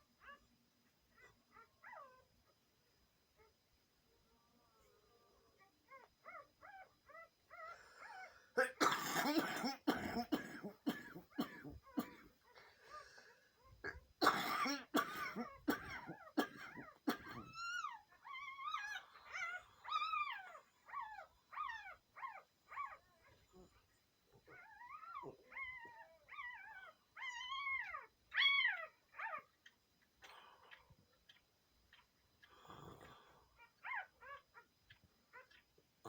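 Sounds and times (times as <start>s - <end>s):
woman coughing breathy bursts: 8.6s - 12.3s, 13.9s - 17.5s.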